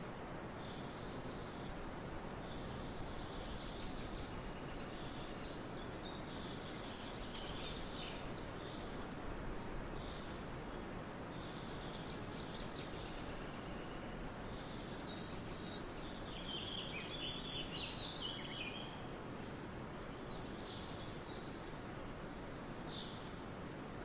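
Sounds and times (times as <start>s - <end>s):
songbirds chirping: 0.0s - 24.0s.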